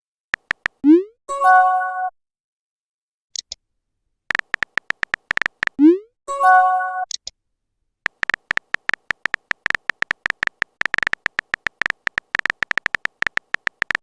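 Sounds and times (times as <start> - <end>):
phone keyboard typing clicks: 0.3 - 0.8, 4.3 - 5.8, 8.0 - 14.0.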